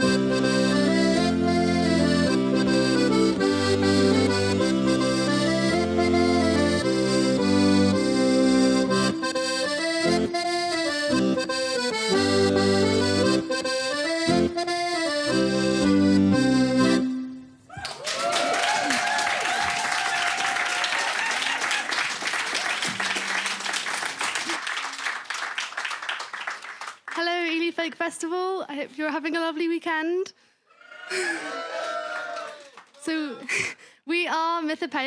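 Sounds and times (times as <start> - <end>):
live folk instrumental: 0.0 - 17.5, 21.0 - 24.9
audience applauding and cheering: 17.7 - 27.2, 31.4 - 33.0.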